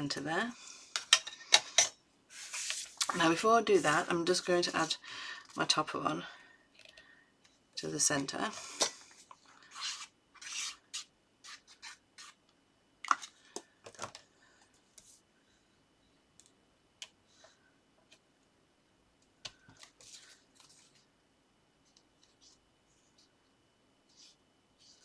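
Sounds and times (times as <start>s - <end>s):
paper rustling and rubbing: 2.3s - 4.1s, 19.8s - 21.1s.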